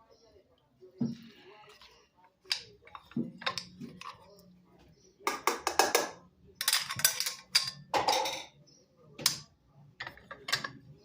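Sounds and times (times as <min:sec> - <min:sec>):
kitchen clacks and knocks: 0:02.5 - 0:04.3, 0:05.2 - 0:08.6, 0:09.2 - 0:11.0.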